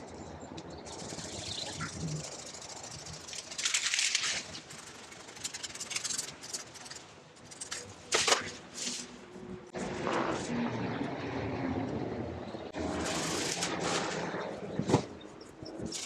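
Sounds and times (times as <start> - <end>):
branches rustling and scraping: 1.1 - 9.2, 12.8 - 15.1.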